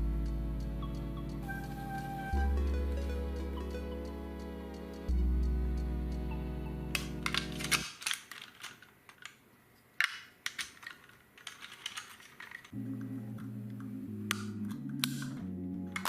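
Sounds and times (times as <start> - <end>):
background music: 0.0 - 7.9, 12.7 - 16.0
plastic toy parts clicking: 7.0 - 12.8, 14.3 - 16.0.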